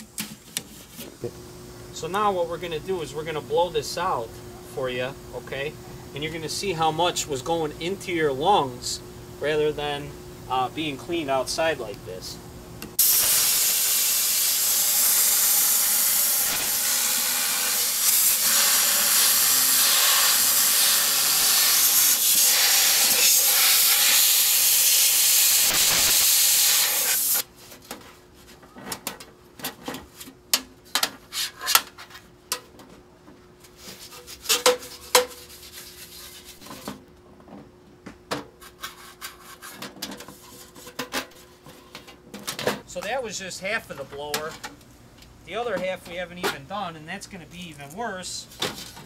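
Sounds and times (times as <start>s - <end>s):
compressed air hissing: 13.0s - 27.4s.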